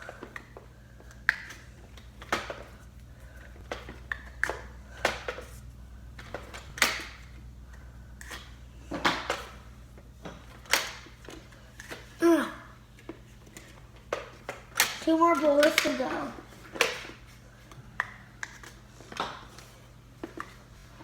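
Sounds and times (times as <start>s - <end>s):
faint low hum: 0.0s - 13.9s.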